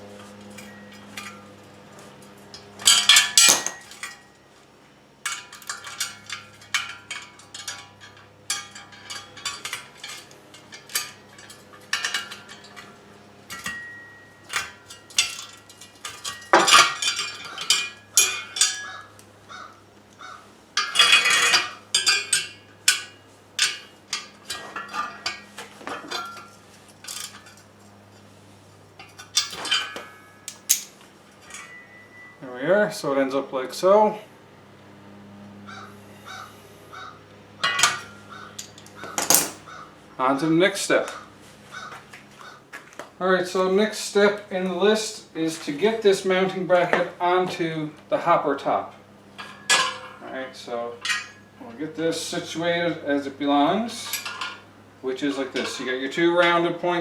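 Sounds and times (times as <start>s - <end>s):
socket wrench clicking on steel: 30.5s - 30.9s.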